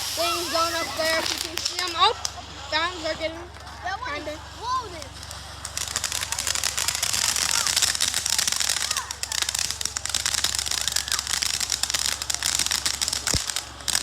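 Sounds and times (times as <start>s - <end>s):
firework fountains crackling: 0.0s - 14.0s.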